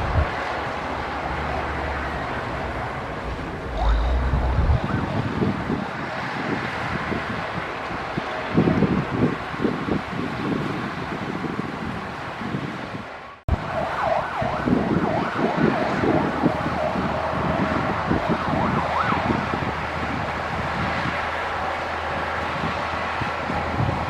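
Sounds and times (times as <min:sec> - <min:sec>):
heavy diesel engine running: 0:00.0 - 0:09.6
high-pitched wavering wail: 0:03.6 - 0:05.4.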